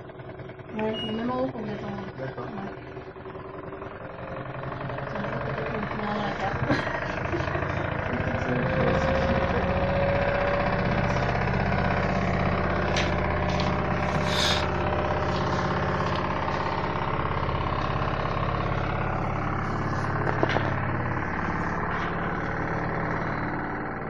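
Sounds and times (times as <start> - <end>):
washing machine humming: 0.0 - 24.0.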